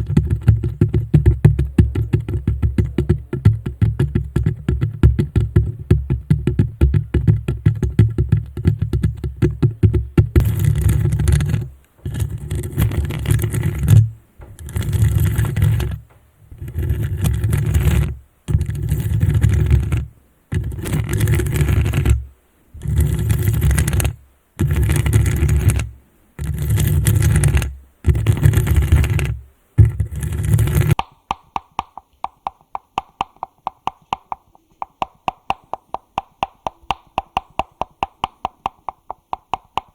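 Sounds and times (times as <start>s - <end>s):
fast tapping on microphone: 0.0s - 39.9s
scratchy rubbing strokes: 10.4s - 39.9s
quick regular ticking: 30.4s - 39.9s.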